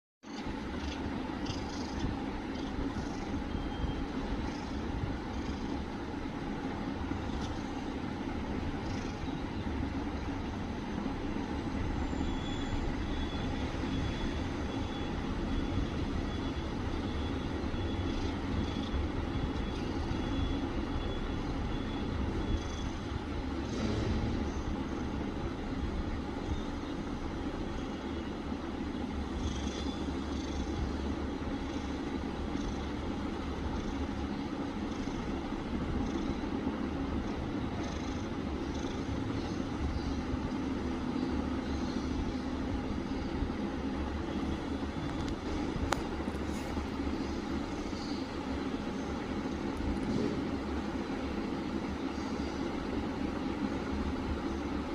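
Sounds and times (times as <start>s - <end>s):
cat snoring: 0.8s - 3.8s, 4.4s - 6.0s, 8.7s - 9.5s, 22.4s - 23.1s, 29.3s - 30.9s, 31.6s - 34.2s, 34.9s - 36.4s, 37.6s - 39.6s.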